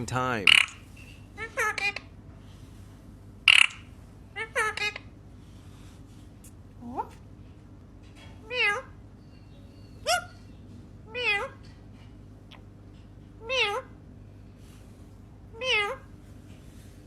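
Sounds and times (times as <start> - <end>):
parrot mimicking cat meows: 8.4 - 9.0, 11.1 - 11.6, 13.4 - 13.9, 15.5 - 16.1.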